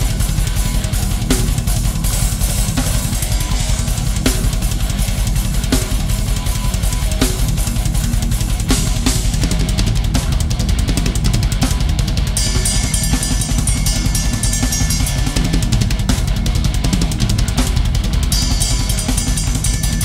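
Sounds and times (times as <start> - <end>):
bass drum strokes: 0.0 - 20.0
cymbals: 12.4 - 17.0, 18.3 - 20.0.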